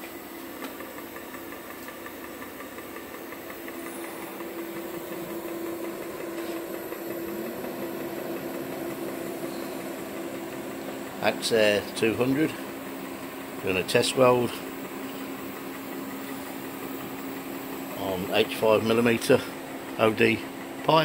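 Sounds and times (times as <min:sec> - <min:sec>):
welding machine hum: 0:00.0 - 0:21.0.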